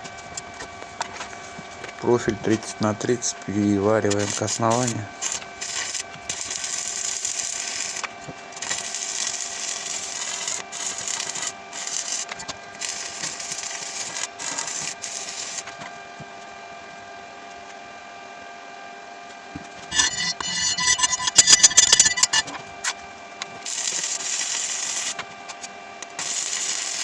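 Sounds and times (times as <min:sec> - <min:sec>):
electric arc welding crackle: 0:04.1 - 0:15.7, 0:23.7 - 0:25.2, 0:26.2 - 0:27.0.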